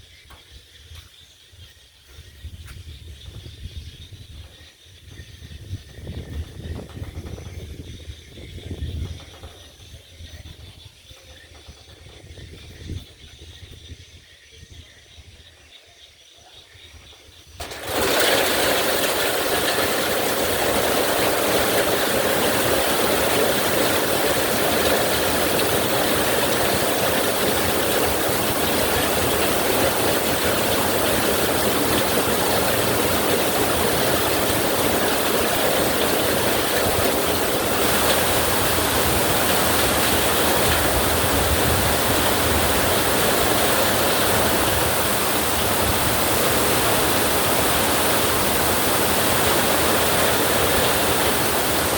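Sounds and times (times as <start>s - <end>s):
heavy rain: 17.6s - 51.9s.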